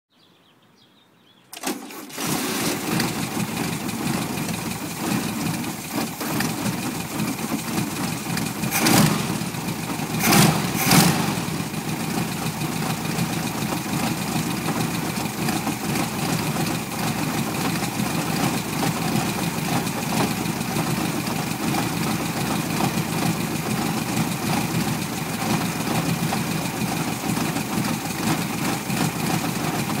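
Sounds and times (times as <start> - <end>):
car engine starting and idling roughly: 1.6 - 30.0.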